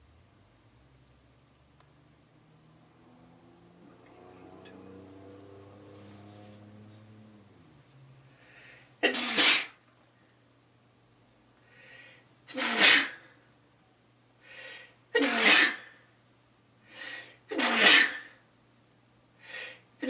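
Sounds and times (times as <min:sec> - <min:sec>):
person breathing in: 0:08.3 - 0:09.0, 0:11.6 - 0:12.3, 0:14.4 - 0:15.0
person sneezing: 0:09.0 - 0:09.8, 0:12.5 - 0:13.3, 0:15.2 - 0:16.0, 0:17.5 - 0:18.4.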